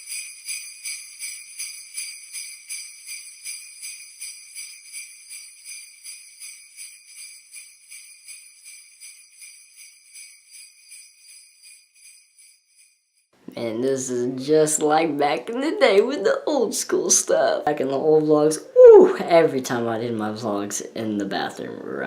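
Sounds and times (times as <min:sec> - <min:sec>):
jingle bells shaken: 0:00.0 - 0:13.2.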